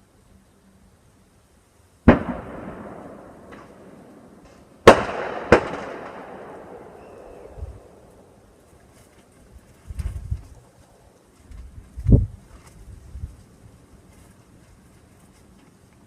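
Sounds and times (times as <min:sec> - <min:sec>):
fireworks exploding: 0:02.0 - 0:08.6.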